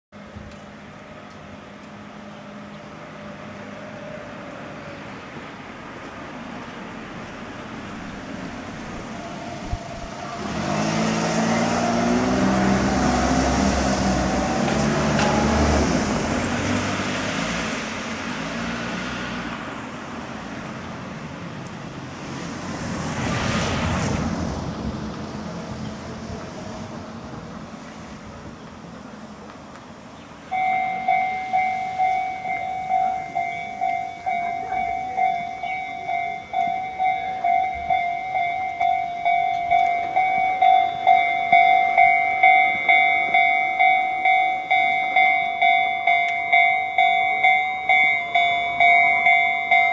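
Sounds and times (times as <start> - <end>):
vehicle passing with rumble: 2.4 - 28.2.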